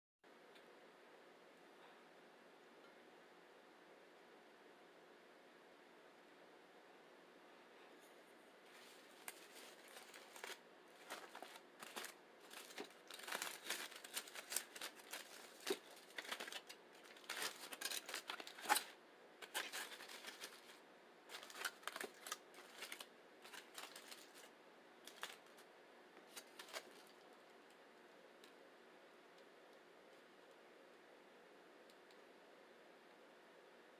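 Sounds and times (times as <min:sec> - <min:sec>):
plastic wrapper crinkling and tearing: 0:08.7 - 0:25.6, 0:26.3 - 0:27.2.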